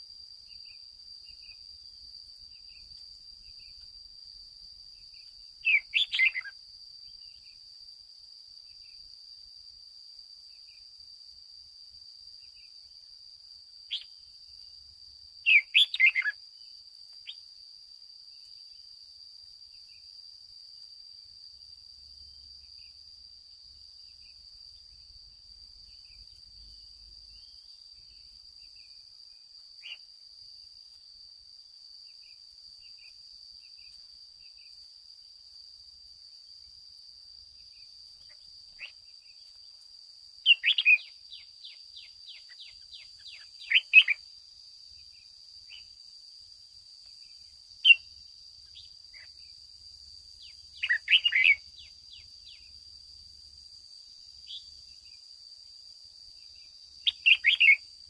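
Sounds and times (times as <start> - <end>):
bird singing short phrases: 5.6 - 6.5, 15.4 - 16.4, 40.4 - 44.2, 50.4 - 52.6, 57.0 - 57.8
high-pitched insect drone: 21.2 - 58.0.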